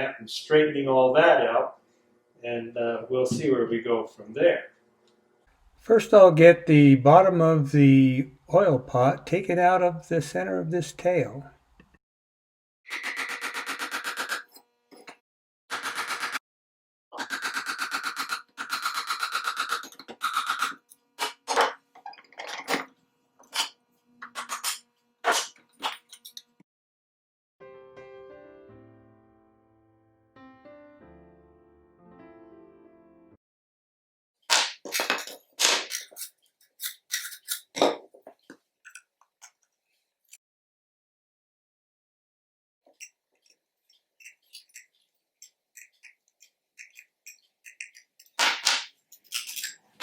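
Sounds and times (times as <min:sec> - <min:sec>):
metal scrapes and clicks: 0:42.9 - 0:48.4.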